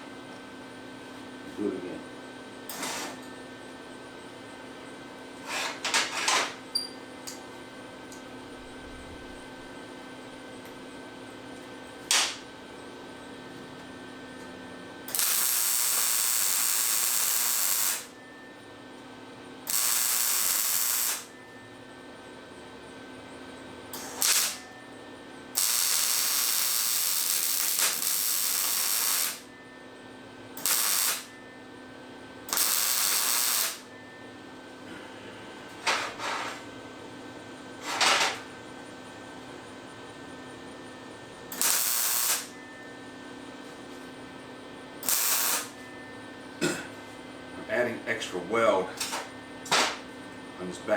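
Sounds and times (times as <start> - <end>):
low machine hum: 0.0 - 50.9
welder hiss: 15.2 - 18.1, 19.7 - 21.3, 24.1 - 24.6, 25.6 - 29.4, 30.6 - 31.3, 32.5 - 33.8, 41.6 - 42.5, 45.0 - 45.8.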